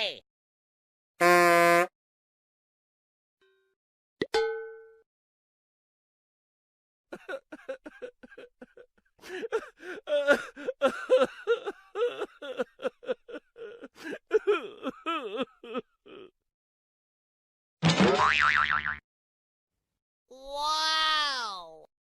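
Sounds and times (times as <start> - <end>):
person giggling: 7.1 - 16.4.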